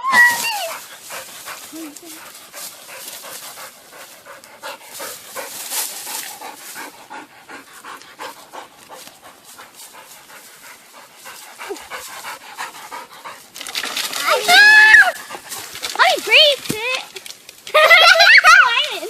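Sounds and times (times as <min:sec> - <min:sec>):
dog panting hard: 0:00.6 - 0:14.3.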